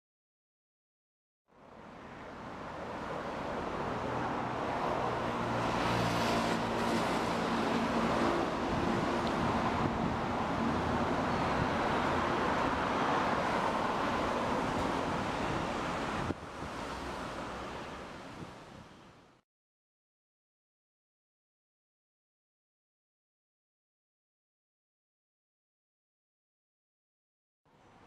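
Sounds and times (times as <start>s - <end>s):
road traffic rush: 1.5s - 19.4s.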